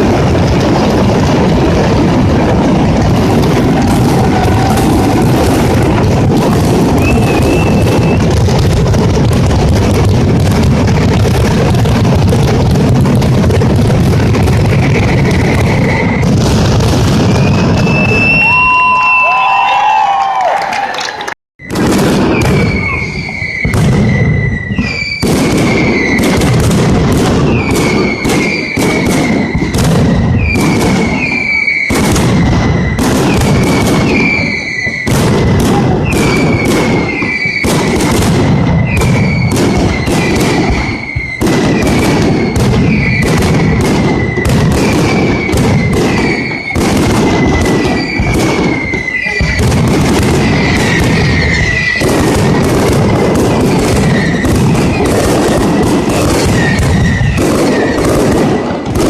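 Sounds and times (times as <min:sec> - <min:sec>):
firecracker bangs and booms: 0:00.0 - 0:20.5, 0:21.6 - 0:59.0
short falling whistle: 0:06.9 - 0:08.3, 0:17.3 - 0:20.5, 0:21.6 - 0:25.2.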